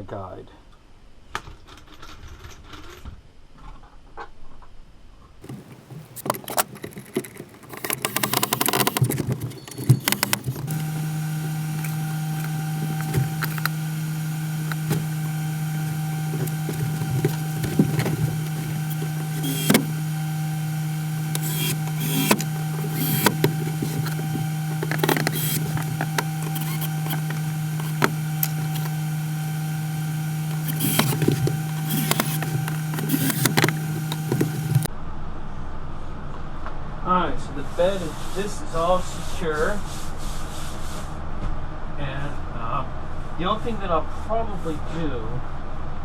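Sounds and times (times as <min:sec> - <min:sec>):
knocks and clatter of handling: 0:05.4 - 0:10.8
low mechanical hum: 0:05.4 - 0:34.9
sharp clicks: 0:05.4 - 0:34.9.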